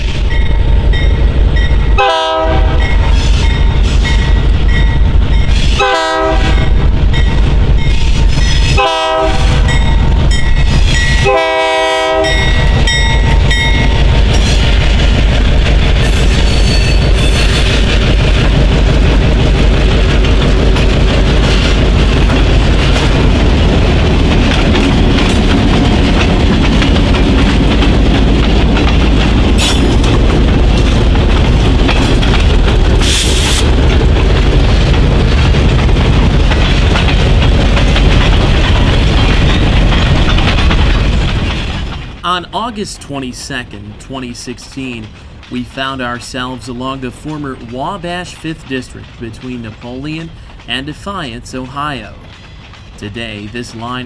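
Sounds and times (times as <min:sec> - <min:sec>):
wheels clacking over rail joints: 0:00.0 - 0:43.3, 0:45.0 - 0:54.0
freight train rumble: 0:00.0 - 0:54.0
locomotive horn blasts: 0:02.0 - 0:02.9, 0:05.8 - 0:06.7, 0:08.8 - 0:09.6, 0:11.2 - 0:12.6.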